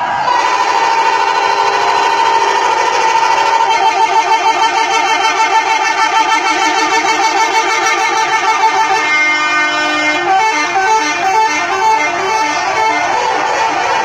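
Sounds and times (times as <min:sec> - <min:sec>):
multi-tone musical bus horn: 0:00.0 - 0:14.0.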